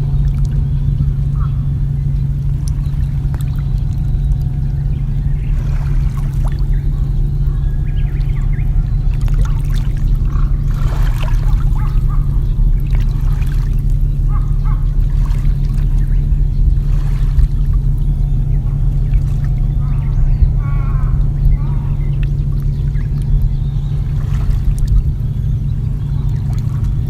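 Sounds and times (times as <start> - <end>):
steady low rumble: 0.0 - 27.0
water trickling and splashing: 0.0 - 27.0.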